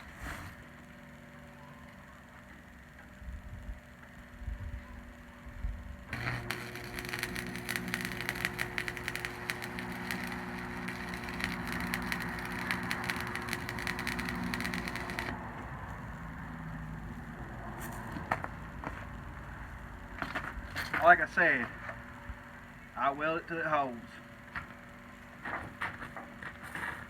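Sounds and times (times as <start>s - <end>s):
low electrical hum: 0.0s - 27.0s
sharp clicks: 6.1s - 15.4s
welding arc crackling: 6.1s - 16.2s.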